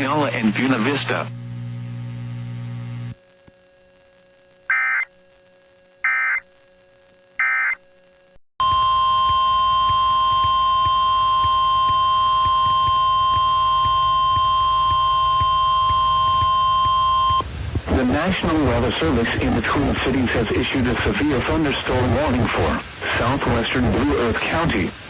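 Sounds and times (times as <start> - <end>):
radio static: 0.0 - 5.1, 5.7 - 6.5, 7.4 - 7.8, 17.3 - 25.0
bursts of data tones: 4.7 - 5.1, 6.0 - 6.4, 7.4 - 7.8.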